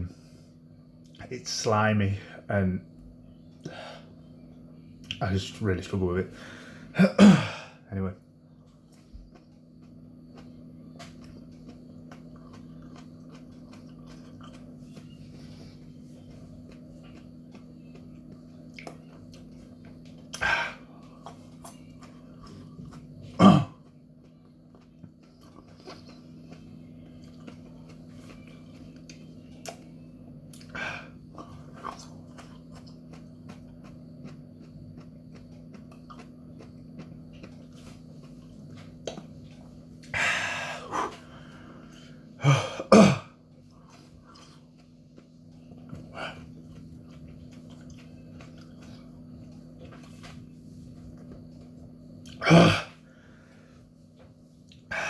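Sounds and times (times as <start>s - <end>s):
steady low hum: 0.0s - 55.0s
man coughing: 7.0s - 7.8s, 23.4s - 23.8s, 42.4s - 43.4s.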